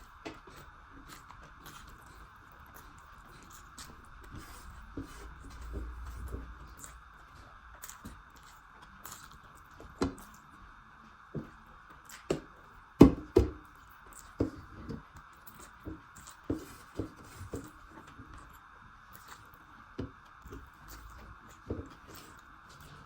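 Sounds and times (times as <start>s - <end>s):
chewing smacks: 0.4s - 10.5s, 12.0s - 12.3s, 13.8s - 14.4s, 15.1s - 17.8s, 18.4s - 19.6s.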